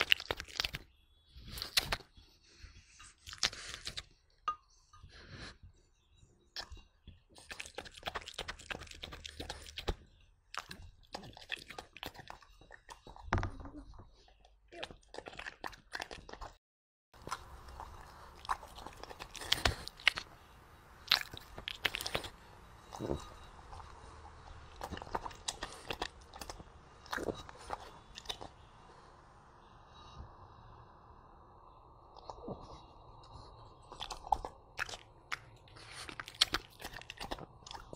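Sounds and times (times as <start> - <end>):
dog chewing: 6.6 - 13.3, 17.2 - 28.7, 32.2 - 37.9.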